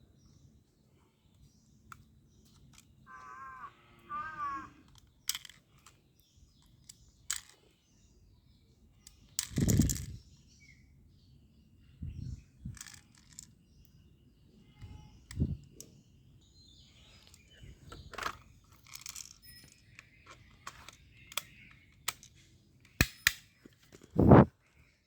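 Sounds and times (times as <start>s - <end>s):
crow cawing: 3.1s - 4.8s
sharp clicks: 20.0s - 23.6s.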